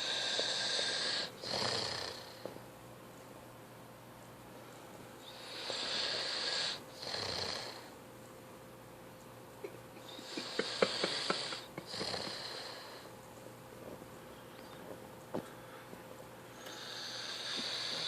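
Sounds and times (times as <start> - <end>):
person snoring: 0.0 - 2.4, 5.3 - 7.9, 10.1 - 13.1, 16.6 - 18.0.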